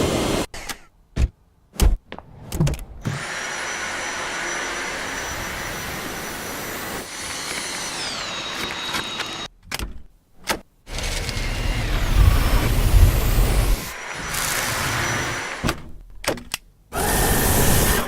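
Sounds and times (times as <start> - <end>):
vacuum cleaner motor whining: 3.1 - 9.5.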